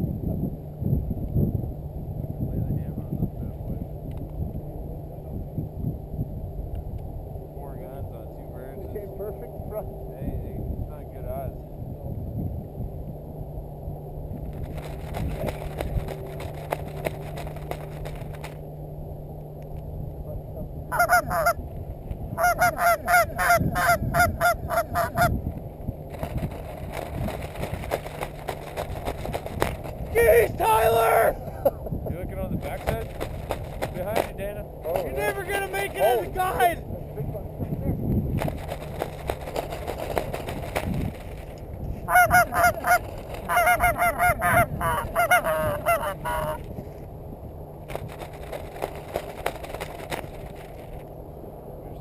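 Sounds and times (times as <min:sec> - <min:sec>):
rustling: 0:14.4 - 0:18.6, 0:26.0 - 0:30.4, 0:32.6 - 0:36.3, 0:38.2 - 0:44.2, 0:47.8 - 0:51.1
goose honking: 0:20.9 - 0:21.6, 0:22.4 - 0:25.4, 0:42.0 - 0:46.7.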